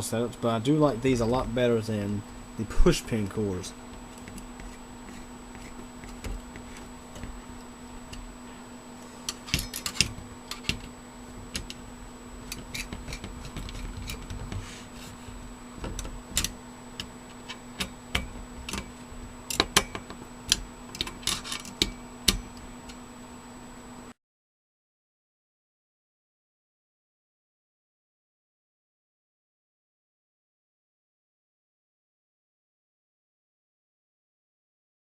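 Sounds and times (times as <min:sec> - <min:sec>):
steady low hum: 0:00.0 - 0:24.2
screwdriver clicking on metal screws: 0:09.3 - 0:10.9, 0:11.5 - 0:11.8, 0:19.5 - 0:22.6.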